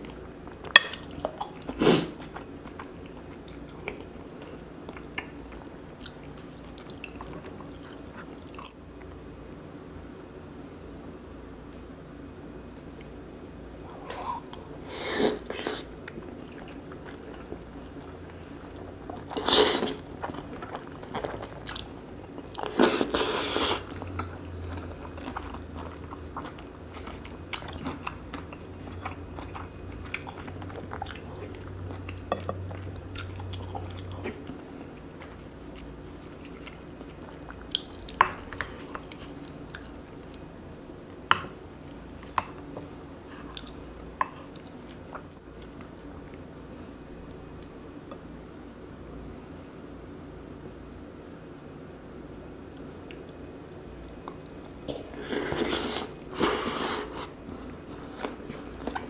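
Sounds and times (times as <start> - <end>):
close chewing and biting: 15.5 - 40.5.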